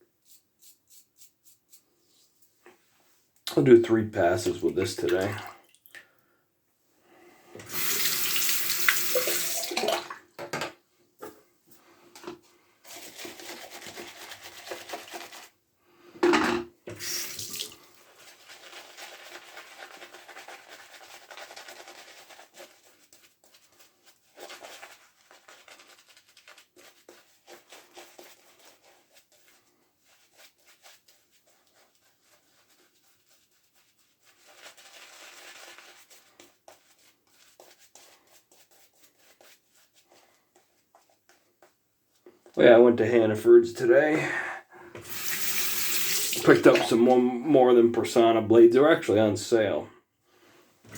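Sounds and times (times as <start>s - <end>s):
bathroom sink tap running: 7.6s - 10.2s, 16.9s - 17.9s, 45.0s - 47.2s.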